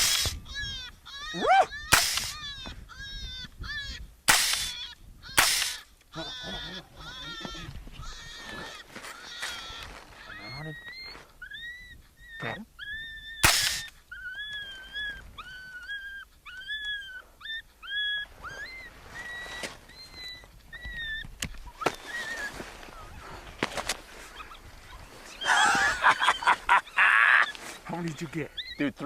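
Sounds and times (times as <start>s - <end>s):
suppressed rifle shot: 0.0s - 0.4s, 1.9s - 2.4s, 4.3s - 4.8s, 5.4s - 5.8s, 13.4s - 14.0s
high-pitched yelping cries: 0.0s - 23.4s, 24.2s - 29.0s.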